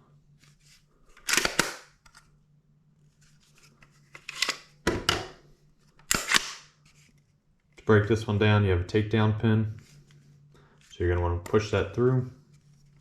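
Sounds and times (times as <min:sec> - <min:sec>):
pistol mechanical clicks and rattles: 0:01.2 - 0:02.2, 0:06.0 - 0:06.7.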